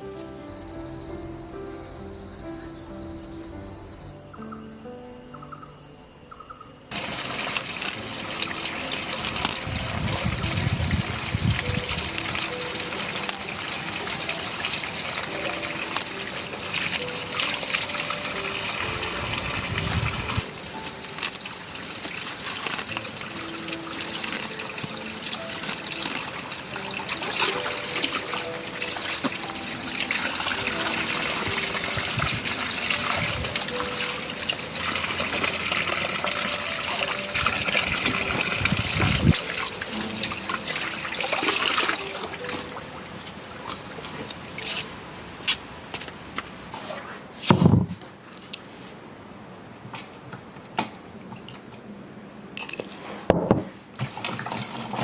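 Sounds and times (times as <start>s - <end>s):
water trickling: 6.9s - 45.4s.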